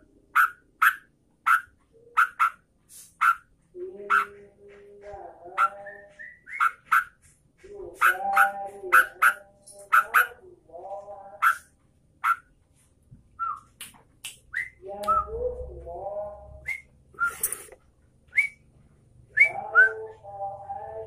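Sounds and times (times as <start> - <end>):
bird warbling chatter: 0.4 - 3.4, 8.0 - 10.4.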